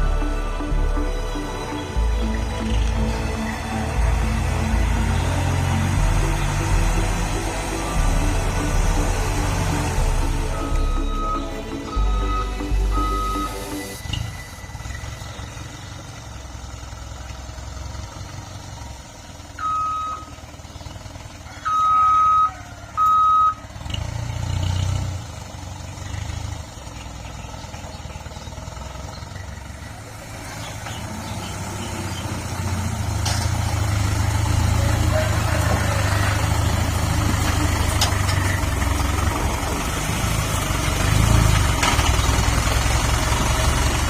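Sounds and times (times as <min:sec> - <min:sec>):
dump truck engine running: 0:00.0 - 0:44.0
short high beeps: 0:10.4 - 0:14.8.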